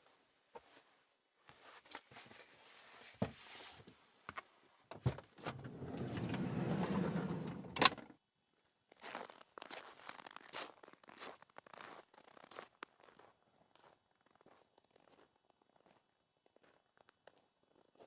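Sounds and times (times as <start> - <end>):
rumbling sliding noise: 5.5 - 7.9.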